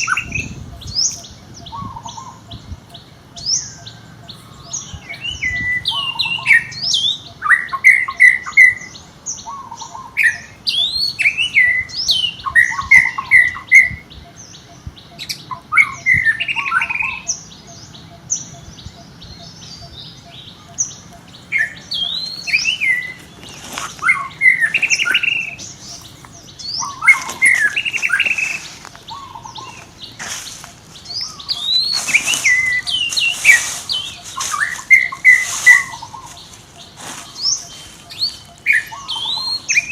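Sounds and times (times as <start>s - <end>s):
high chirping calls: 0.0s - 39.9s
rustling: 21.0s - 39.6s.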